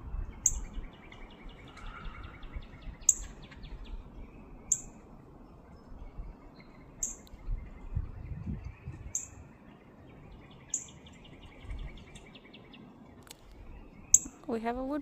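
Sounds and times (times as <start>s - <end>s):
low rumble on microphone: 0.0s - 10.5s, 11.1s - 15.0s
bird trill: 0.1s - 5.1s, 5.8s - 12.9s, 13.7s - 14.6s
high bird chip notes: 7.0s - 7.4s.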